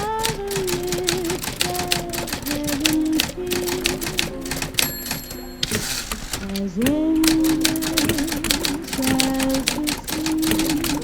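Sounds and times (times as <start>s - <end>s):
old radio band playing slow song: 0.0s - 11.0s
person singing: 0.0s - 11.0s
typewriter keys clacking: 0.0s - 11.0s
high ringing tone: 4.8s - 6.4s.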